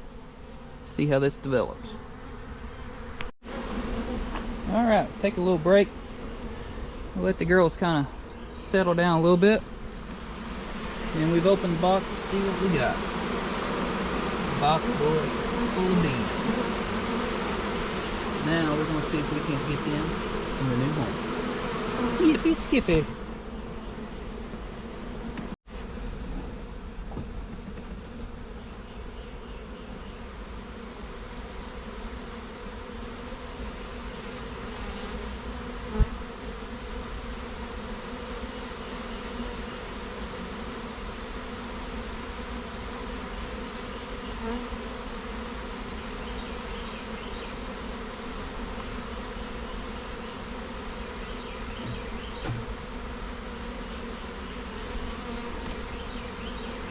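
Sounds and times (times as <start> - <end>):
honeybees buzzing: 0.0 - 56.9
sharp knock: 51.8 - 52.8.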